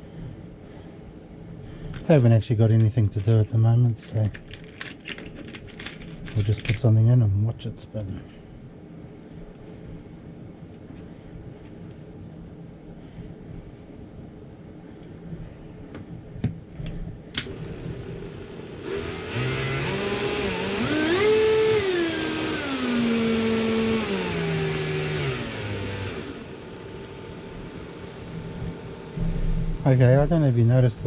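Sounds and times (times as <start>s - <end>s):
rotary tool motor whining: 17.4s - 29.9s.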